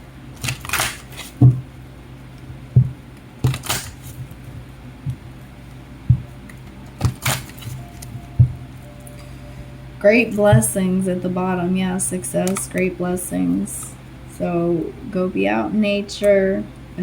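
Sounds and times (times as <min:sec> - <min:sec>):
cards shuffling: 0:00.4 - 0:01.4
soft background music: 0:04.2 - 0:17.0.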